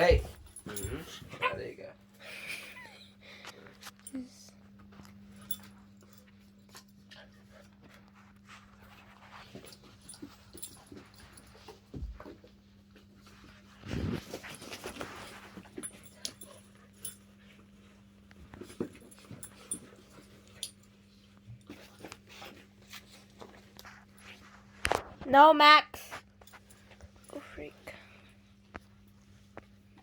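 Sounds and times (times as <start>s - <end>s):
dogs playing: 0.0s - 25.2s
dogs scuffling: 6.7s - 25.2s.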